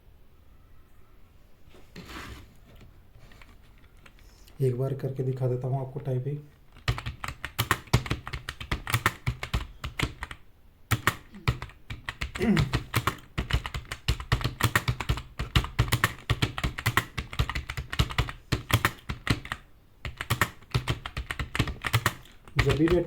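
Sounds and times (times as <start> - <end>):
fast typing on keyboard: 6.7 - 23.0.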